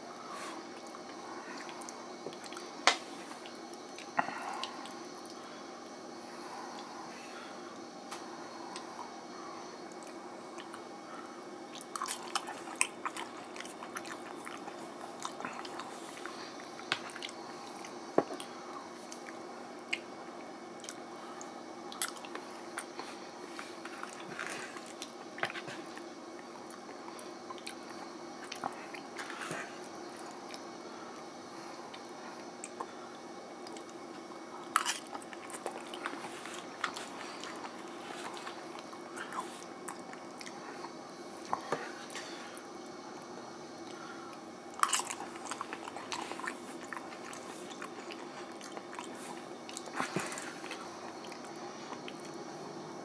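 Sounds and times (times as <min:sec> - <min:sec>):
steady background hum: 0:00.0 - 0:53.0
close-up chewing noodles: 0:11.7 - 0:20.1, 0:20.8 - 0:30.8, 0:31.8 - 0:43.1, 0:43.8 - 0:52.5.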